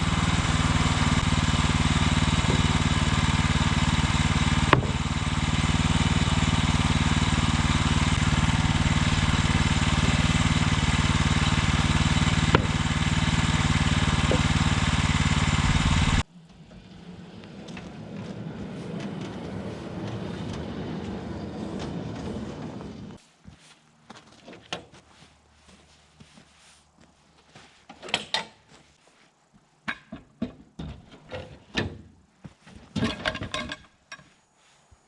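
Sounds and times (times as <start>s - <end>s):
sawmill gas engine running: 0.0s - 23.2s
scuffing and handling noise: 23.1s - 29.9s, 32.3s - 33.0s.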